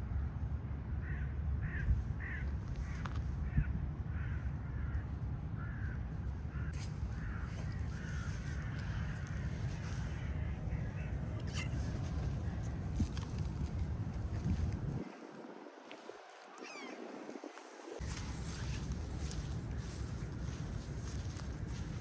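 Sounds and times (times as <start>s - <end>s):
bird calling: 7.2s - 13.2s, 16.2s - 17.3s.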